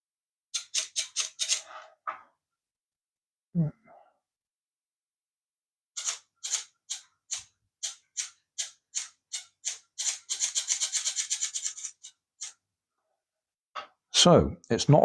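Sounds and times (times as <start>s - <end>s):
toy motor buzzing in bursts: 6.0s - 12.6s.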